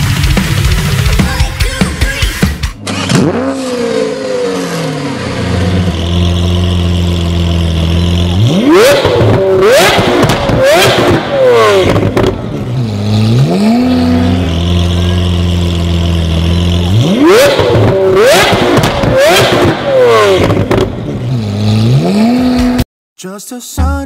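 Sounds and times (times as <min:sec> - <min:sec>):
car engine idling and revving: 0:00.0 - 0:22.9.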